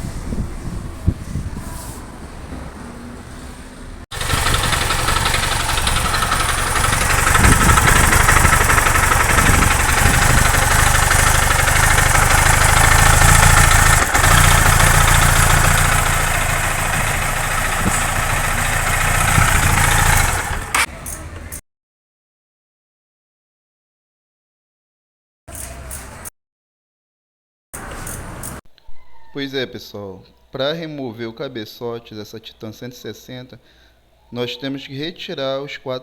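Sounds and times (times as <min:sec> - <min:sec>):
motorcycle engine clattering: 0:04.1 - 0:21.6.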